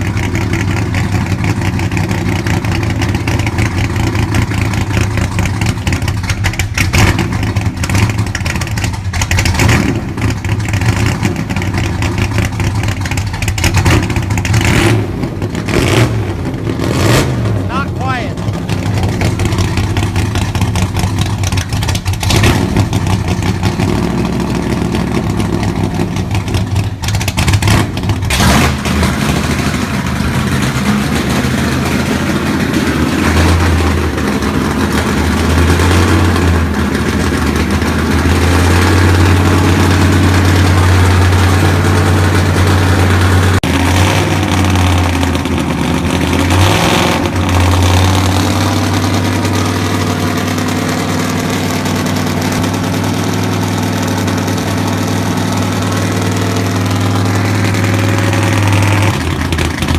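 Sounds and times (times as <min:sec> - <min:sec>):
engine running unevenly: 0:00.0 - 0:59.9.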